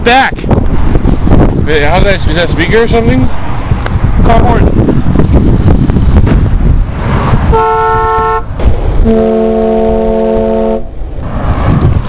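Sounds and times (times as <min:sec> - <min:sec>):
car horn honking: 0:07.5 - 0:10.9.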